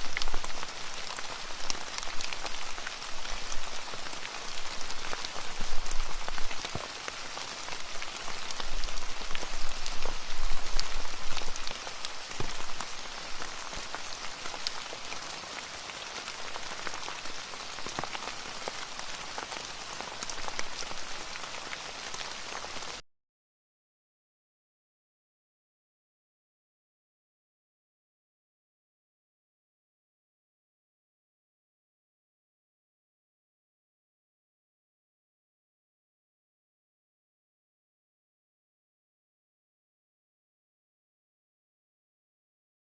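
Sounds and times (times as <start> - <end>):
wood fire crackling and popping: 0.0 - 15.4, 16.0 - 22.8.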